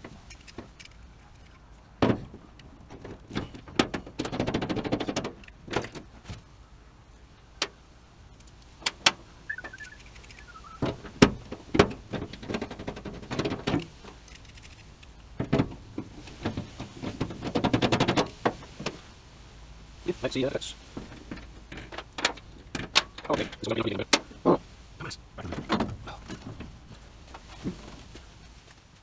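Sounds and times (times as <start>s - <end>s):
metallic clicks and knocks: 0.0s - 6.5s, 7.6s - 19.1s, 20.8s - 24.4s
metal parts rattling: 20.8s - 24.4s.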